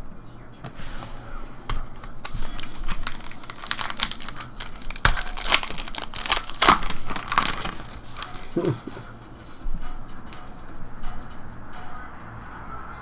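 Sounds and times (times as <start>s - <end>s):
plastic wrapper tearing and crinkling: 1.9s - 8.4s.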